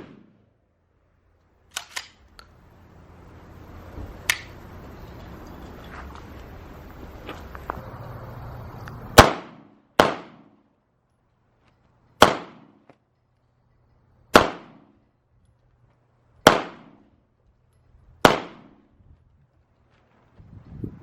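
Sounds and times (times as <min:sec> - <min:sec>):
gunshots: 0:00.0 - 0:00.4, 0:09.1 - 0:10.6, 0:12.2 - 0:12.9, 0:14.3 - 0:15.0, 0:16.4 - 0:17.1, 0:18.2 - 0:18.9.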